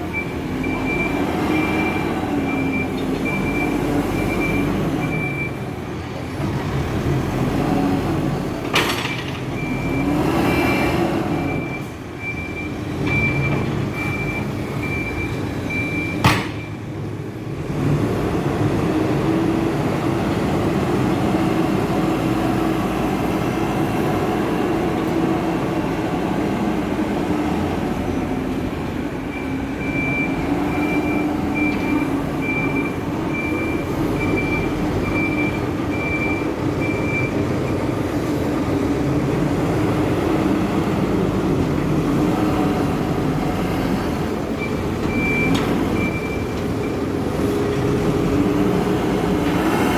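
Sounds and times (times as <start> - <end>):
diesel engine under load: 0.0 - 49.9
backup alarm beeping: 29.3 - 37.8.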